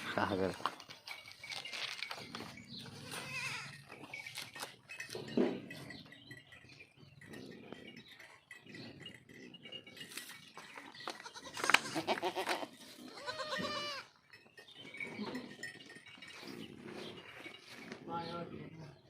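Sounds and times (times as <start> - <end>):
goats bleating: 2.8 - 3.8, 11.1 - 14.1.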